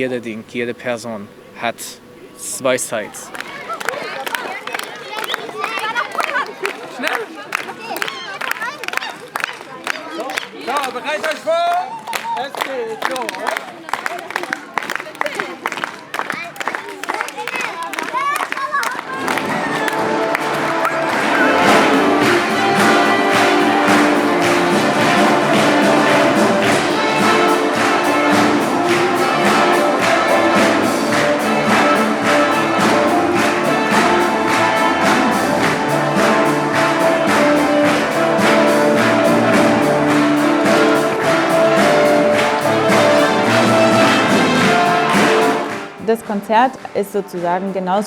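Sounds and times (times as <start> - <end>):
brass instruments: 18.8 - 48.0
orchestra playing: 19.0 - 48.0.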